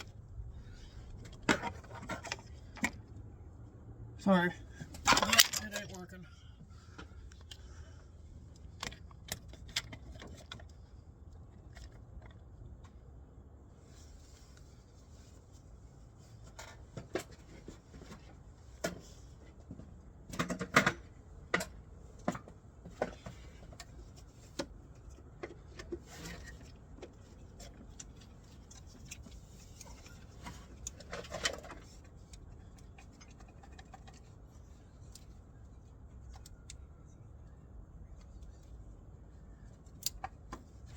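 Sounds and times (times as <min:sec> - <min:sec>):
low steady hum: 0:00.0 - 0:40.9
metal tools clanking: 0:05.0 - 0:06.1.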